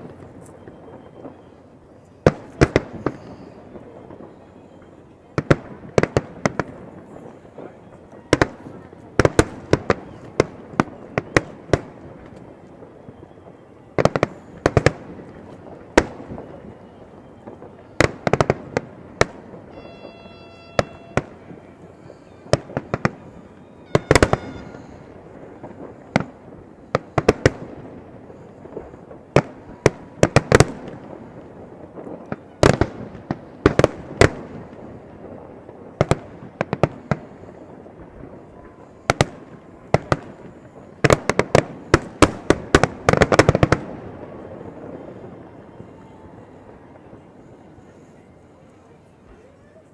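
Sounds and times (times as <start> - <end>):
fireworks bursting: 0.0 - 49.9
brief high tone: 19.7 - 25.7.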